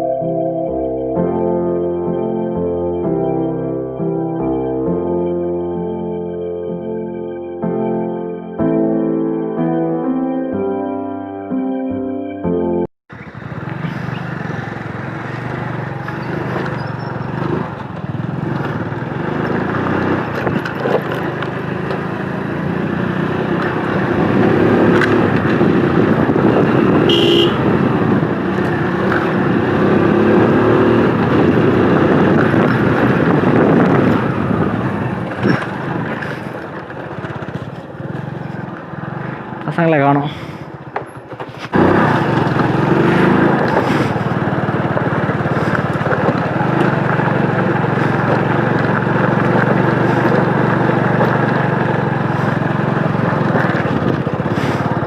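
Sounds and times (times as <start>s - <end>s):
motorcycle engine: 13.1s - 55.0s
rushing wind: 13.1s - 55.0s.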